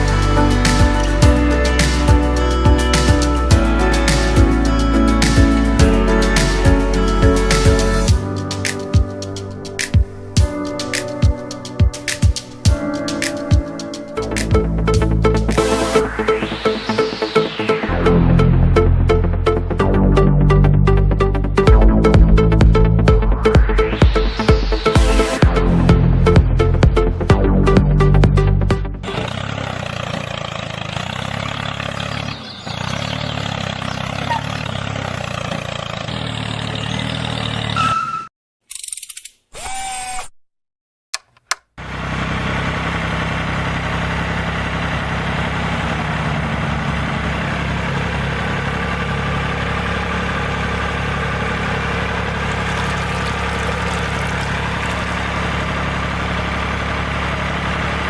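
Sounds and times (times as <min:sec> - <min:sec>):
tractor engine idling: 0:26.0 - 0:37.8, 0:41.8 - 0:58.0.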